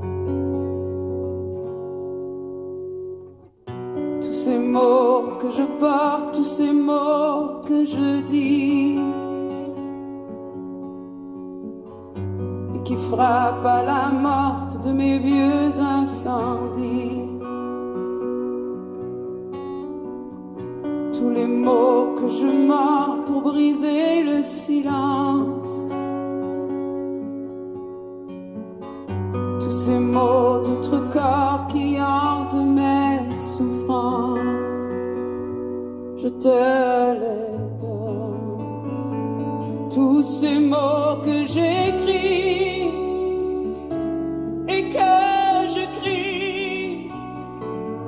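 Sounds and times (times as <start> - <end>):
acoustic guitar: 0.0 - 48.0
song over portable speakers: 0.0 - 48.0
person singing with vibrato: 4.2 - 10.0, 12.7 - 18.8, 21.1 - 26.5, 29.6 - 48.0.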